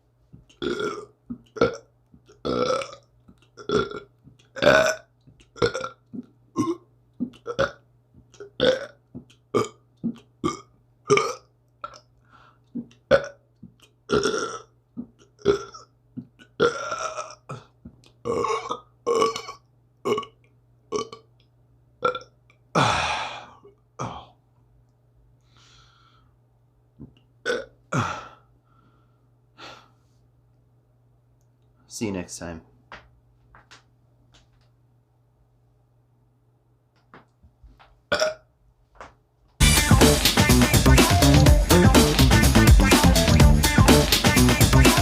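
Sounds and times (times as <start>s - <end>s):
person burping: 0.5s - 7.8s, 8.4s - 12.1s, 12.8s - 13.4s, 14.1s - 21.3s, 22.0s - 24.4s, 27.0s - 28.4s, 38.1s - 38.5s.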